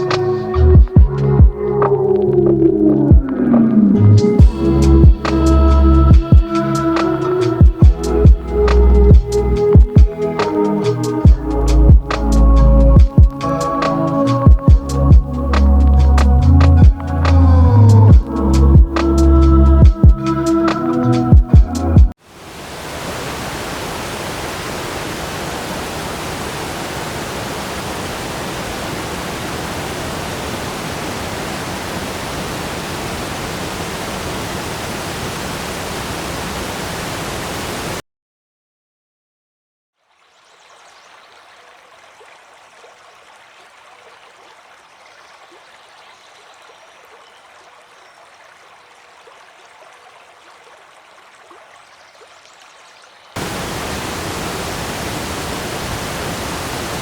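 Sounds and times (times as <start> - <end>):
faint rush of water: 22.2 - 38.0, 40.0 - 57.0
waterfall rushing: 22.2 - 38.0, 53.4 - 57.0.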